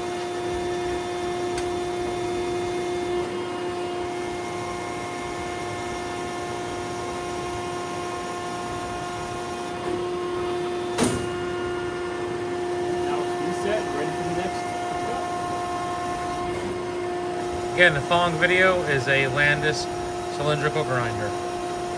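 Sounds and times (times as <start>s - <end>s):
grinder machine hum: 0.0s - 21.9s.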